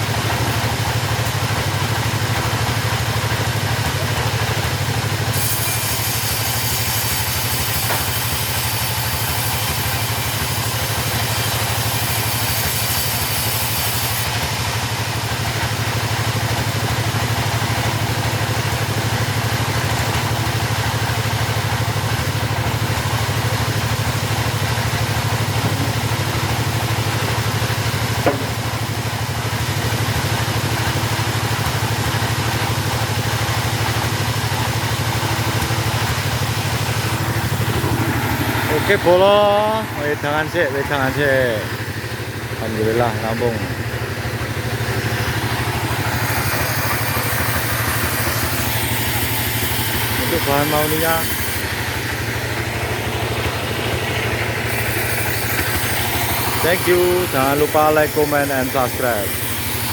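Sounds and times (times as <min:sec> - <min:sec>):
chainsaw engine idling: 0:00.0 - 0:59.9
small knock: 0:28.2 - 0:28.6.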